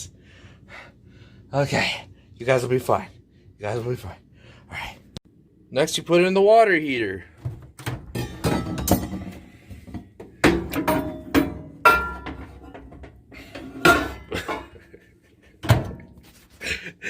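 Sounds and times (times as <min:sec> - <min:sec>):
irregular knocks and clinks: 0:07.4 - 0:14.8.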